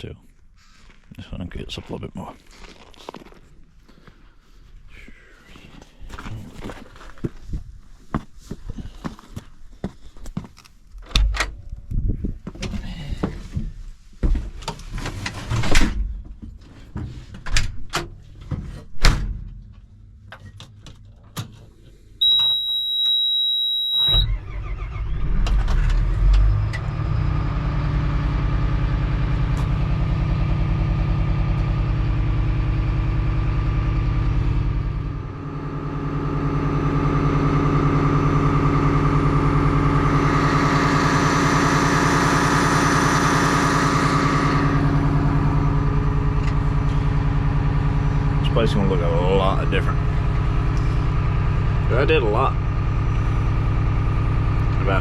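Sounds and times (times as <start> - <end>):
bulldozer diesel engine: 21.1 - 55.0
steady high tone: 22.2 - 24.4, 34.6 - 50.0.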